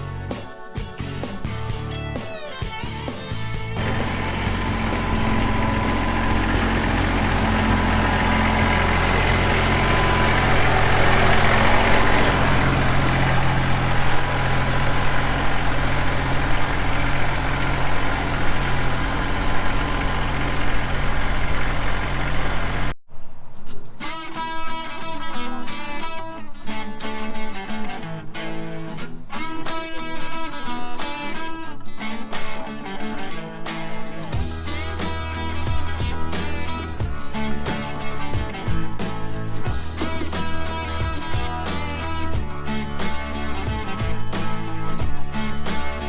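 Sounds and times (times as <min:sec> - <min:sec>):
strummed guitar music: 0:01.9 - 0:20.4, 0:24.0 - 0:46.0
tractor engine running: 0:03.7 - 0:23.0, 0:34.4 - 0:46.0.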